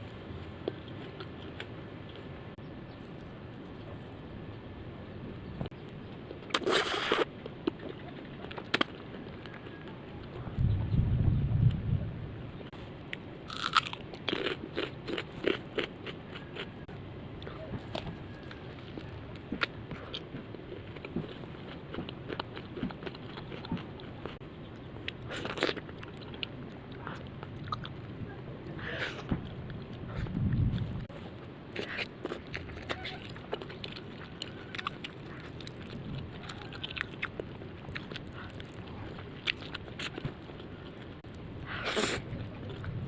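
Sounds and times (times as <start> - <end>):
person chewing food: 13.5 - 28.0, 31.7 - 42.9.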